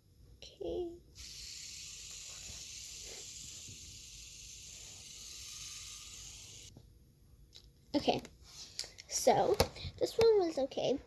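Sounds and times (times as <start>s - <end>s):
fidget spinner whirring: 0.6s - 6.8s.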